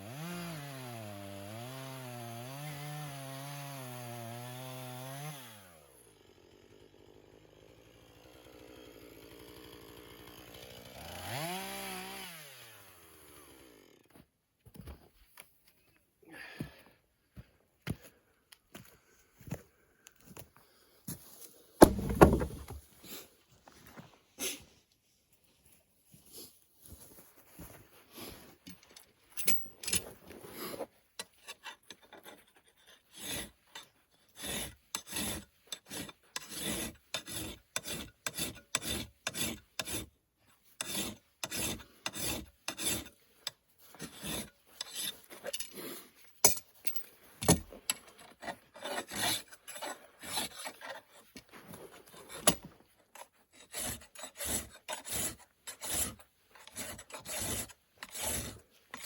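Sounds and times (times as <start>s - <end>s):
hand tool rasping across wood: 21.8s - 22.8s, 29.8s - 59.0s
sharp knocks: 21.8s - 22.8s.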